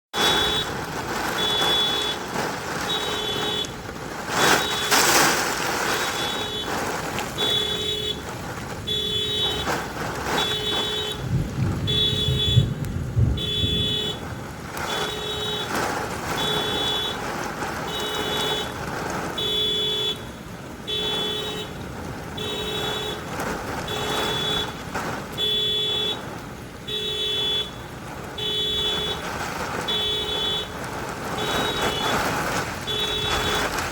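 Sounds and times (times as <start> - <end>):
car alarm beeping: 0.1 - 21.8, 22.4 - 33.9
rain falling: 0.1 - 33.9
deep thunder rumble: 0.2 - 19.4.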